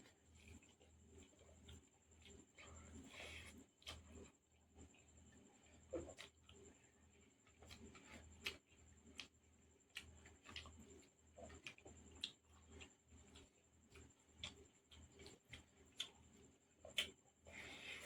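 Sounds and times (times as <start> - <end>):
mouth chewing clicks and smacks: 7.4 - 17.6.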